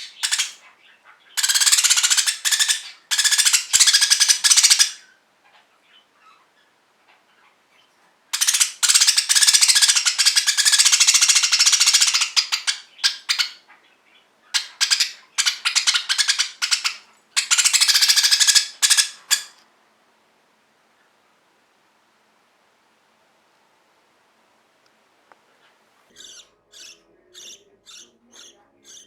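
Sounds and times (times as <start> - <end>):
budgerigar rasping call: 0.0 - 5.1, 8.4 - 13.8, 14.5 - 19.6, 26.1 - 29.0.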